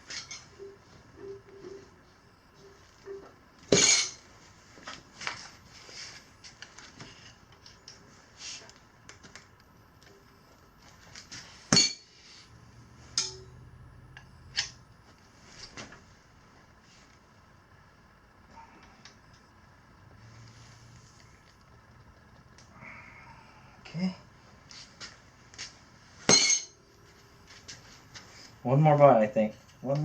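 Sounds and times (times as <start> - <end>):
tire irons clinking on wheel rim: 3.7 - 4.3, 11.7 - 14.8, 26.3 - 26.9.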